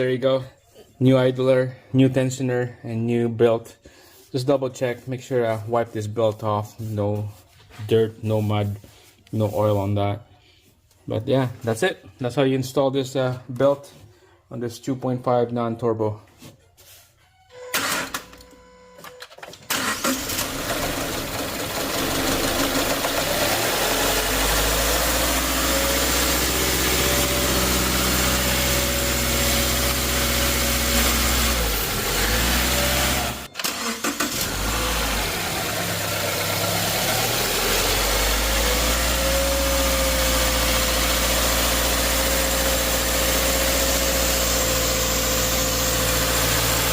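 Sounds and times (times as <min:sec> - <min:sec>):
car engine starting and idling: 0:17.6 - 0:46.9.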